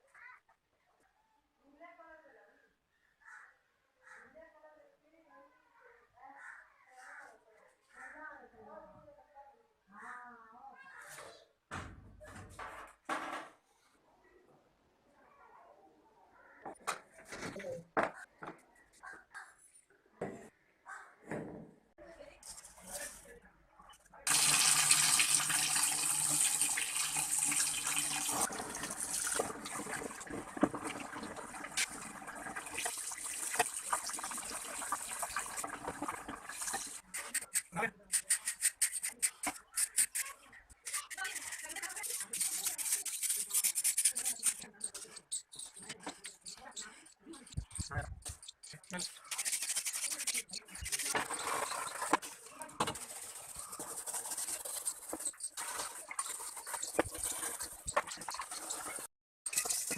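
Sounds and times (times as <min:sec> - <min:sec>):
water running: 0:24.3 - 0:37.0, 0:48.9 - 0:59.9
scraping and rubbing fan parts: 0:40.9 - 0:59.9.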